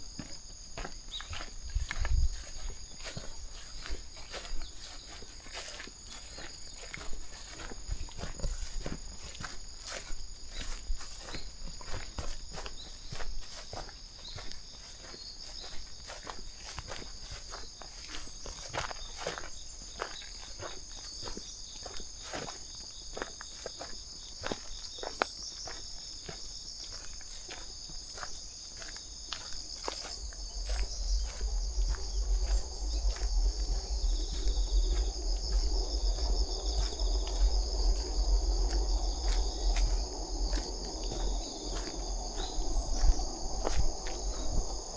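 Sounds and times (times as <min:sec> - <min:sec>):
insects chorus: 0:00.0 - 0:44.9
footsteps walking: 0:00.1 - 0:22.6, 0:23.2 - 0:44.9
low rumble: 0:29.6 - 0:44.9.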